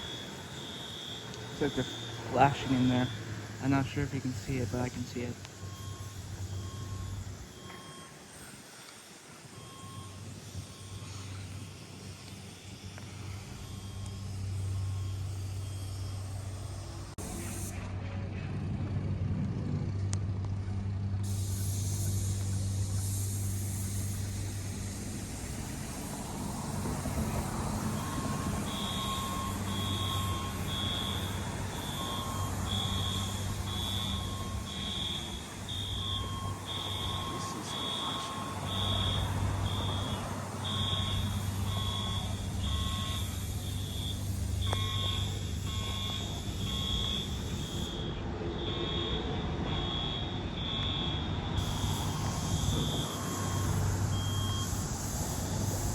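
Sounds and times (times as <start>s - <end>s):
fire alarm beeping: 0.0s - 16.8s, 25.9s - 55.8s
steady low hum: 0.0s - 55.9s.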